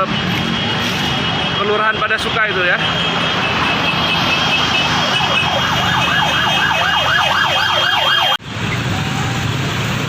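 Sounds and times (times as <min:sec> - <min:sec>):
traffic noise: 0:00.0 - 0:10.0
emergency siren yelping: 0:03.1 - 0:08.4.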